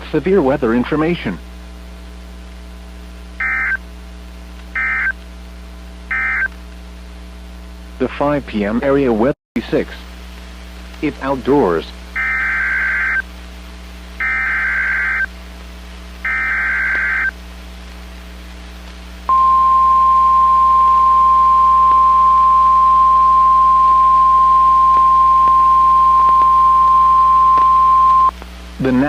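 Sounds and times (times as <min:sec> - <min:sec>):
loud steady alarm tone: 0:03.4 - 0:03.8, 0:04.8 - 0:05.1, 0:06.1 - 0:06.5, 0:12.2 - 0:13.2, 0:14.2 - 0:15.3, 0:16.2 - 0:17.4, 0:19.3 - 0:28.3
warbling digital data bursts: 0:06.1 - 0:06.5, 0:12.2 - 0:13.2, 0:14.2 - 0:15.3, 0:16.2 - 0:17.4.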